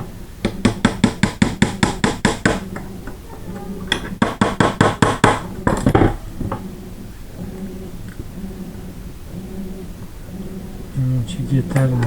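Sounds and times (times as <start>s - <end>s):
hammer tapping metal punch: 0.0s - 6.7s.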